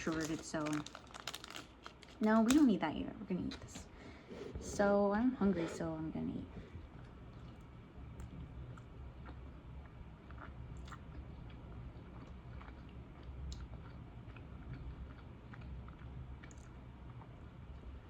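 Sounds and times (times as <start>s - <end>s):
steady low hum: 0.0s - 18.0s
person chewing pizza: 6.6s - 18.0s.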